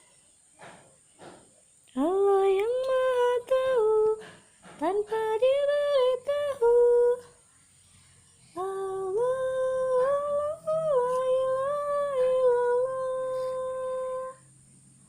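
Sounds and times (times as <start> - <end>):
child humming: 12.8 - 14.4.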